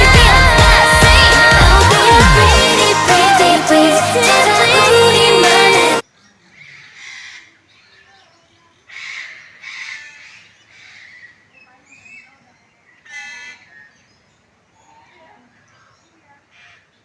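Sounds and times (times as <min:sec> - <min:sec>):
music: 0:00.0 - 0:06.0.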